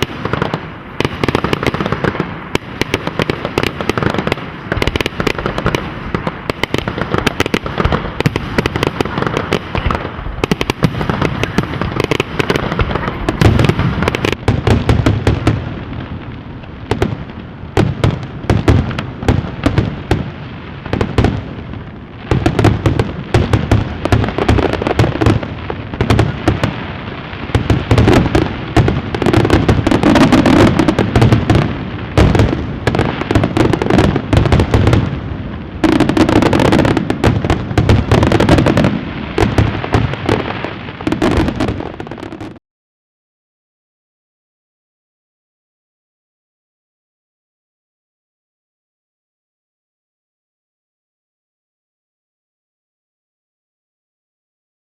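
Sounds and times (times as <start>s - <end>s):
fireworks crackling and popping: 0.0s - 42.6s.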